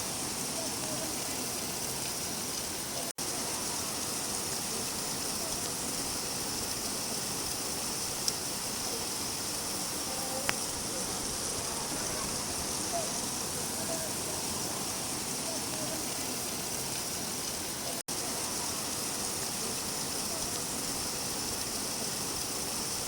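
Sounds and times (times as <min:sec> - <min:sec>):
steady rainfall: 0:00.0 - 0:23.0
faint ticks: 0:10.2 - 0:10.7.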